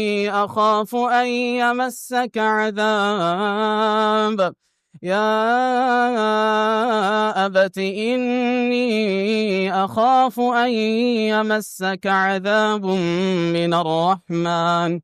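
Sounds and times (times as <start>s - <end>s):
man reciting melodically: 0.0s - 15.0s
man breathing: 4.6s - 5.0s.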